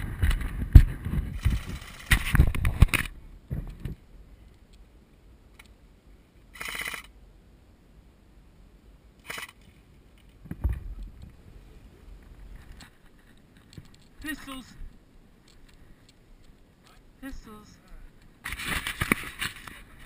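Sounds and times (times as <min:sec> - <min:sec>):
rustling: 0:00.0 - 0:04.8, 0:09.2 - 0:20.0
airsoft gunfire: 0:09.2 - 0:09.6
low thumps: 0:10.4 - 0:12.8.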